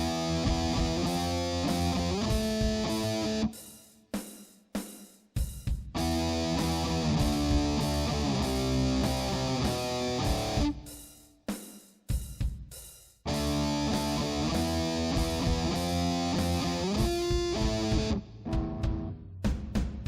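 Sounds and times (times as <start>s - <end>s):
guitar-led rock music: 0.0s - 3.6s, 5.9s - 11.0s, 13.3s - 19.2s.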